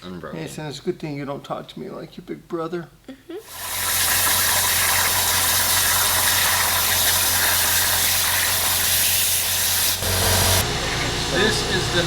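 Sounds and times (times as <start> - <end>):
loud steady hiss: 3.5 - 12.0.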